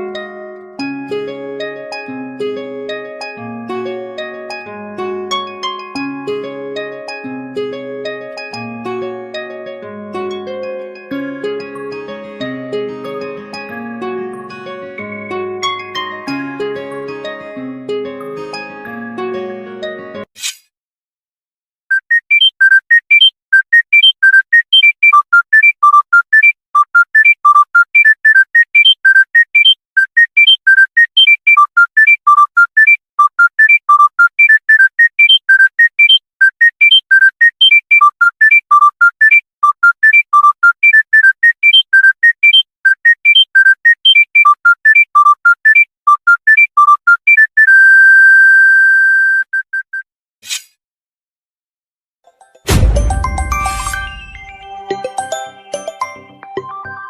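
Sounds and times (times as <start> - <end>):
monophonic phone ringtone: 21.9 - 47.7, 53.1 - 57.0.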